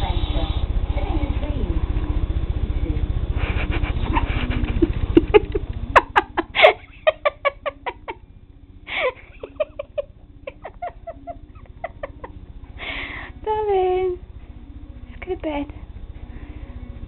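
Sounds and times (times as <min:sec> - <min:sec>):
low rumble: 0:00.1 - 0:17.0
person giggling: 0:03.4 - 0:08.2, 0:08.9 - 0:12.4.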